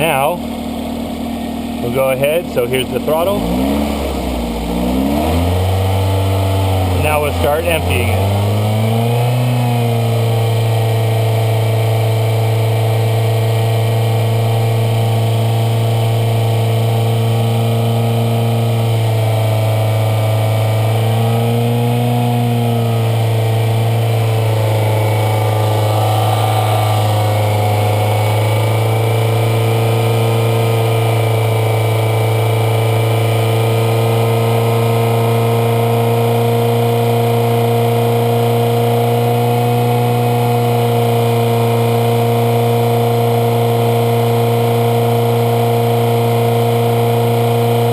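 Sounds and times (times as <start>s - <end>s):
car engine running: 0.0s - 47.9s.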